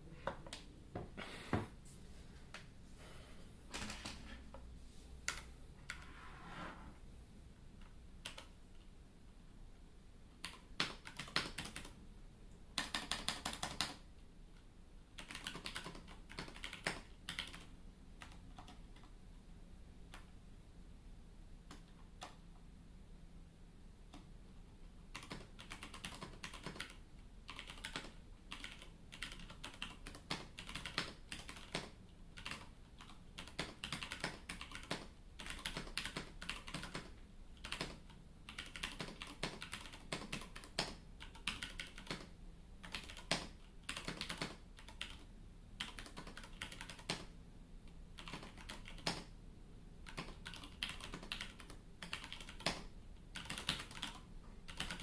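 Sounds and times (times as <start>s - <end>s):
mechanical keyboard typing: 8.2s - 8.6s, 10.4s - 12.0s, 12.8s - 14.0s, 15.2s - 19.1s, 25.1s - 47.3s, 48.2s - 49.3s, 50.0s - 55.0s.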